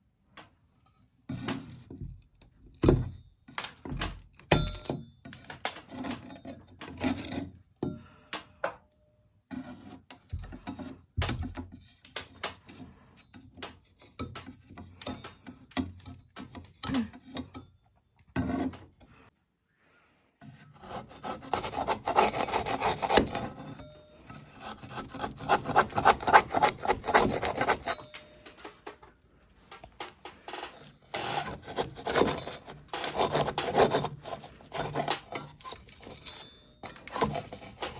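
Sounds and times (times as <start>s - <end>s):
metal spatula scraping a wall: 5.4s - 7.7s, 9.5s - 17.7s, 18.4s - 19.3s, 20.4s - 28.8s, 29.7s - 37.9s.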